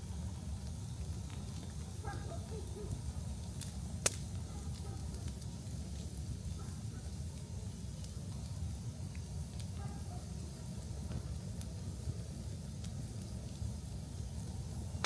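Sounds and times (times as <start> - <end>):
wood fire crackling: 0.0 - 15.0
loud sharp pop of fire: 3.6 - 4.4.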